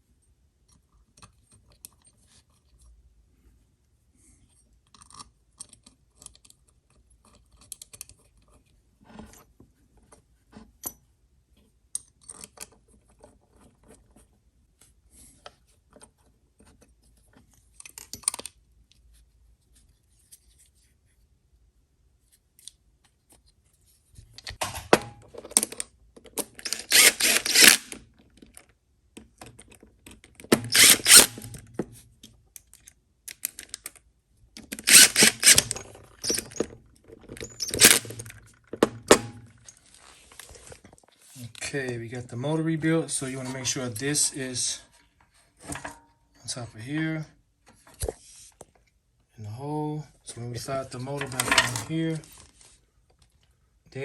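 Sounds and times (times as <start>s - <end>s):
loud rasping bursts: 26.7s - 28.0s, 30.7s - 31.4s, 34.8s - 36.4s, 37.7s - 38.1s
hand tools clicking and knocking: 34.6s - 39.5s.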